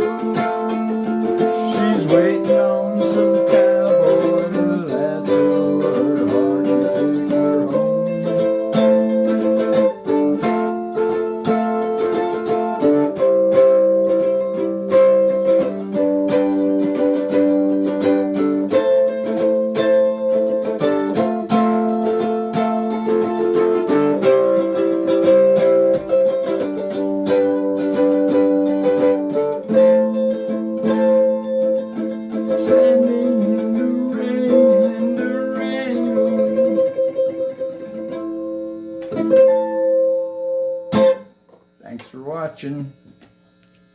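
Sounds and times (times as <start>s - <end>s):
electric mandolin picking: 0.0s - 41.8s.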